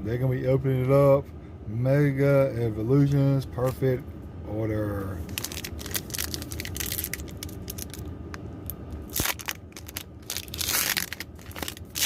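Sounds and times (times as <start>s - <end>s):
foil wrapper crinkling: 5.2s - 8.1s, 9.0s - 12.0s
foil wrapper ripping: 5.3s - 8.0s, 9.0s - 12.0s.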